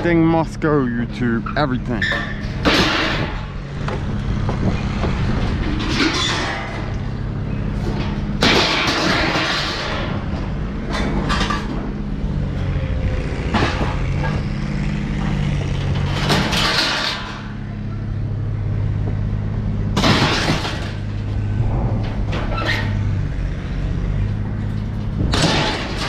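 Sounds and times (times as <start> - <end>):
vehicle engine running: 0.0 - 26.0
scrap metal clattering onto pile: 5.6 - 6.9, 7.8 - 10.1, 16.0 - 17.6, 20.0 - 21.1, 25.3 - 26.0.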